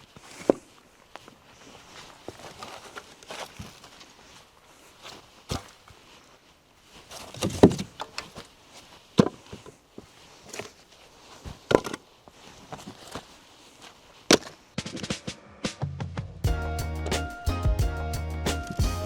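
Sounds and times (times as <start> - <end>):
firewood clunking onto pile: 0.2 - 0.7, 2.3 - 3.9, 5.0 - 5.9, 7.0 - 8.5, 9.2 - 10.8, 11.4 - 12.1, 14.3 - 14.6.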